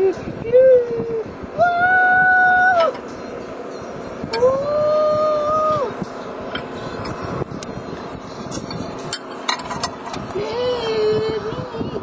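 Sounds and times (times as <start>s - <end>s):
steady background hiss: 0.0s - 12.0s.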